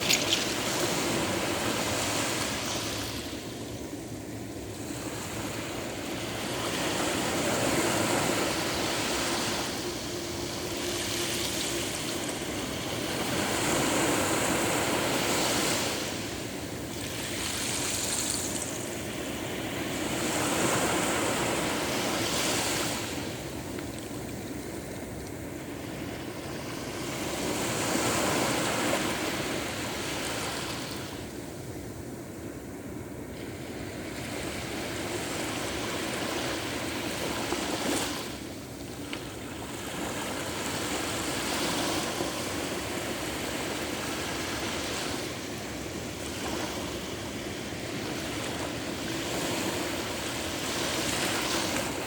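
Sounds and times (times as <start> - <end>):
waves washing onto shore: 0.0 - 31.6, 33.3 - 52.0.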